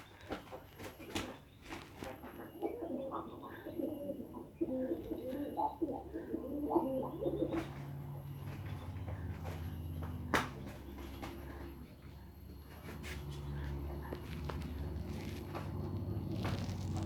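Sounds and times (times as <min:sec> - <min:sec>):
pigeon cooing: 0:00.0 - 0:12.0
faint low hum: 0:00.0 - 0:17.0.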